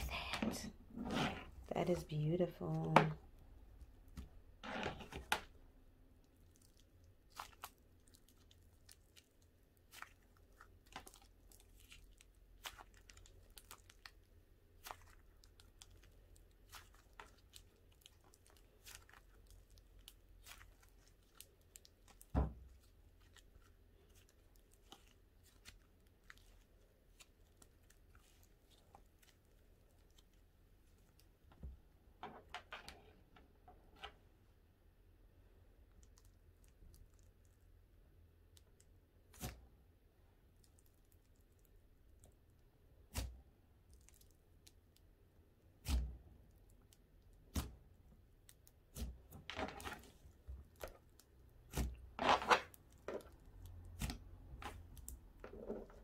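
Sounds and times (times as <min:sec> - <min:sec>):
slime popping and crackling: 0:06.2 - 0:31.4.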